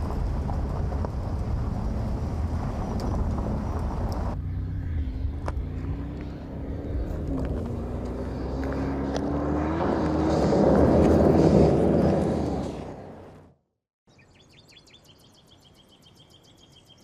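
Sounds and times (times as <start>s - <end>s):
car engine running while driving: 0.0s - 13.4s.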